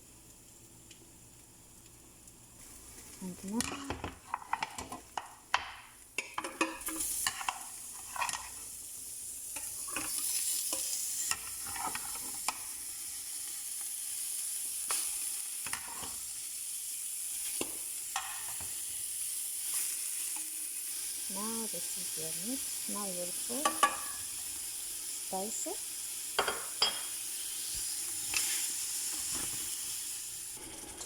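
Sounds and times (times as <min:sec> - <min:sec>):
meat sizzling in hot oil: 0:00.0 - 0:31.0
spoon scraping a pot: 0:06.2 - 0:08.6, 0:09.6 - 0:12.6, 0:15.6 - 0:16.2.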